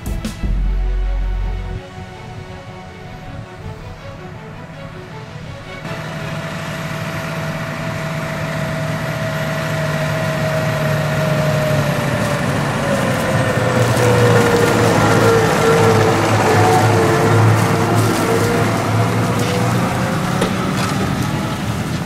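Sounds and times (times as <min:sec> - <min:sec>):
whine dropping in pitch: 0:00.0 - 0:11.7
heavy farm vehicle engine: 0:00.0 - 0:22.0.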